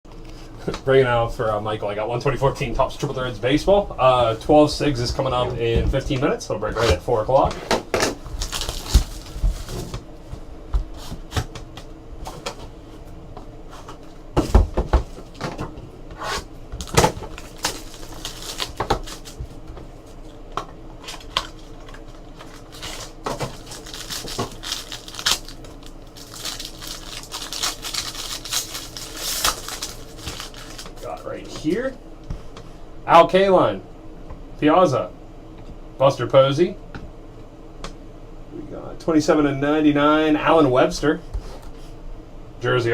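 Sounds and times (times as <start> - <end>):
card packs crinkling and rustling: 8.0 - 10.0, 16.8 - 20.2, 21.0 - 31.8.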